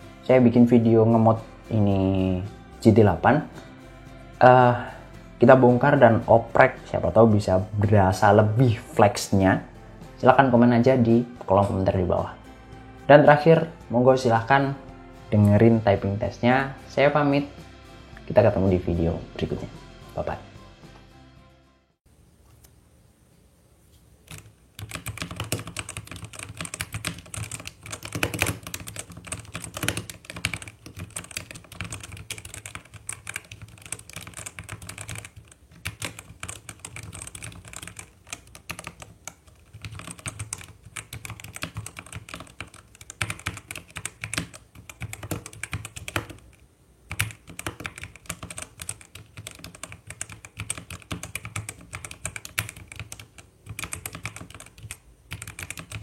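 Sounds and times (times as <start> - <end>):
mechanical keyboard key clacks: 24.3 - 46.5, 47.1 - 56.0.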